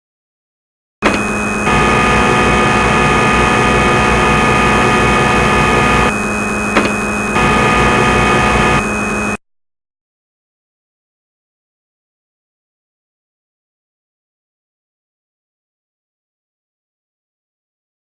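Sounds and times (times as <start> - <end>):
lathe machine hum: 1.0 - 9.4
whining cutting tones: 1.0 - 9.4.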